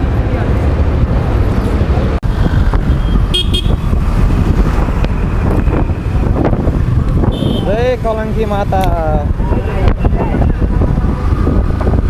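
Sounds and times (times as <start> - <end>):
motorcycle engine and road noise: 0.0 - 12.0
vehicle horn toot: 3.3 - 3.8, 7.3 - 7.7.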